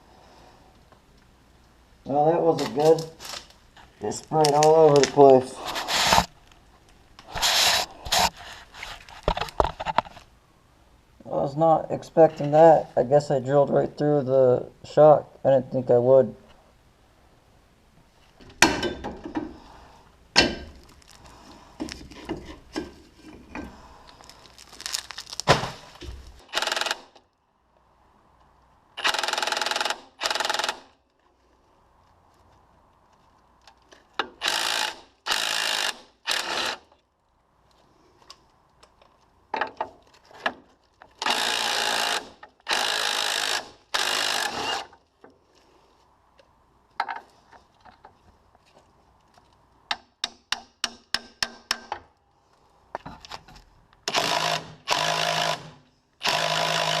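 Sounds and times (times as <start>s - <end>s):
cordless power tool bursts: 26.4s - 27.2s, 29.0s - 30.9s, 34.4s - 36.8s, 41.2s - 45.0s, 54.1s - 57.0s.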